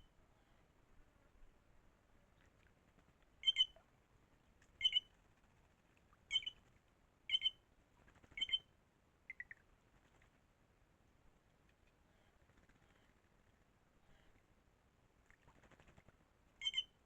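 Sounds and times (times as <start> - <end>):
bird double-noted call: 3.4 - 3.8.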